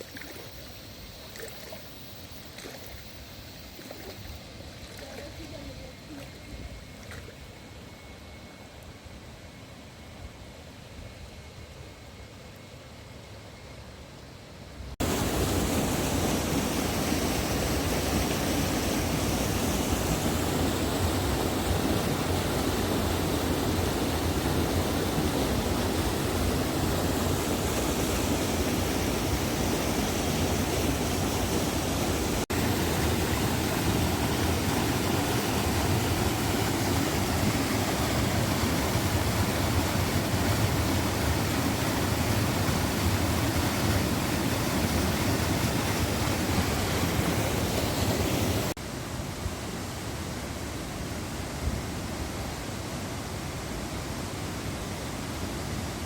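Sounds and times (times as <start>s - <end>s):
water rushing over stones: 0.0s - 5.6s, 15.0s - 48.8s.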